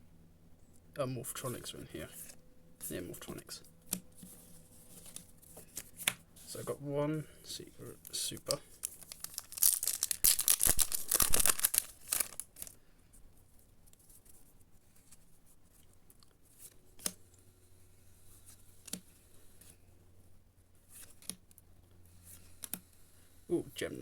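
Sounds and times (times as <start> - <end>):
wrapper crinkling: 8.0 - 12.8.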